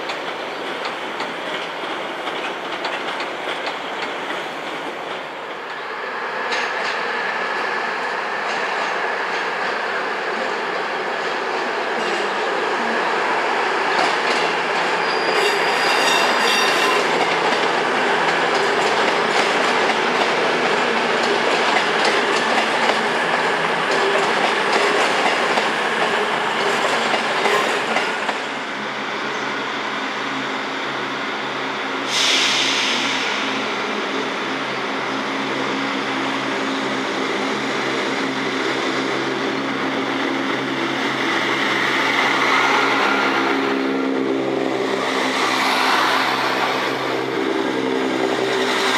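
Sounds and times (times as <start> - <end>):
train wheels clattering: 0.0 - 5.6, 13.9 - 28.4
high wheel squeal: 14.9 - 17.2
sudden hiss: 32.0 - 34.2.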